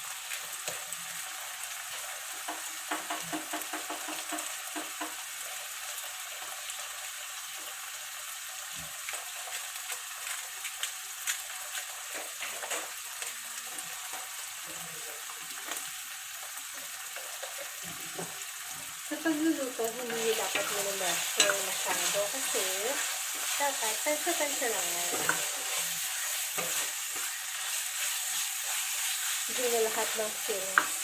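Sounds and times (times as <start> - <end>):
sauce sizzling in a pan: 0.0 - 31.0
utensil tapping a pan: 2.4 - 5.2, 29.5 - 31.0.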